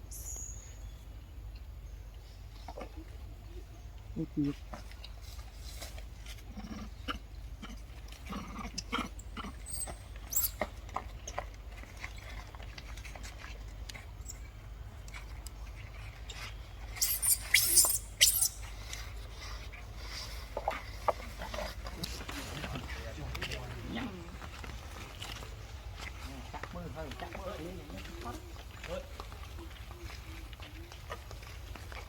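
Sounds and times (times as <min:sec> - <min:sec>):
small clicks and rustles: 0:07.8 - 0:17.0
baby monkey squeaking: 0:09.6 - 0:10.6, 0:16.9 - 0:18.6.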